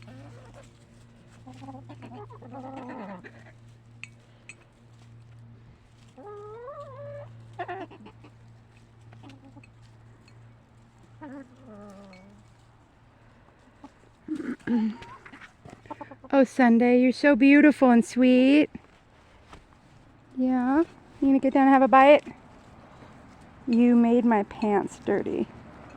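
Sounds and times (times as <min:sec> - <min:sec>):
hens clucking: 0:00.0 - 0:16.6
steady low hum: 0:00.0 - 0:25.9.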